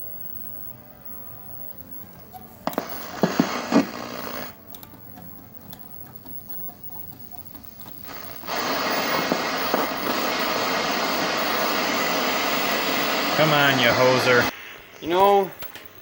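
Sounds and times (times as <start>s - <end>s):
tv static hissing: 0.0s - 16.0s
rotary tuner clicks: 1.9s - 11.8s.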